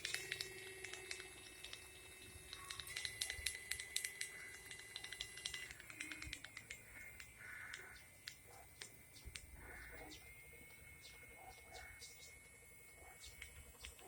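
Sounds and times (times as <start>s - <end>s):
hub motor clicking and knocking: 0.0s - 9.5s
motor whine: 0.0s - 14.0s.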